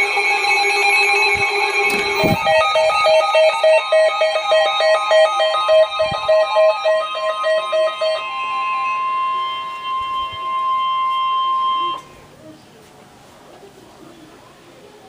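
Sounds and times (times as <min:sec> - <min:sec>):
steady single-pitch alarm tone: 0:00.0 - 0:12.2
electronic alert beeping rapidly: 0:00.7 - 0:12.0.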